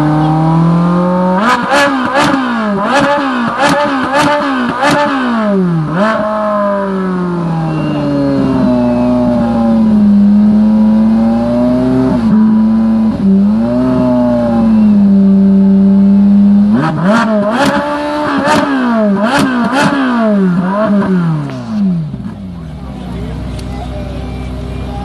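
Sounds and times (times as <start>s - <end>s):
sports car engines revving: 0.0s - 25.0s
exhaust cracks: 16.7s - 23.7s.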